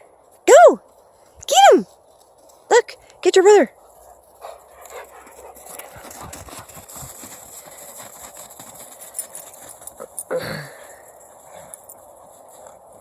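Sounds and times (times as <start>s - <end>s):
dogs scuffling: 3.9s - 10.3s.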